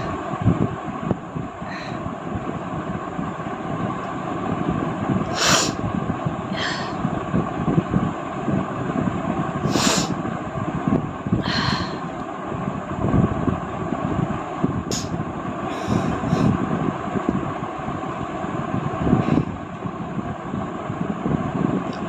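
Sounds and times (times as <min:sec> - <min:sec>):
steady rumbling background: 0:00.0 - 0:22.0.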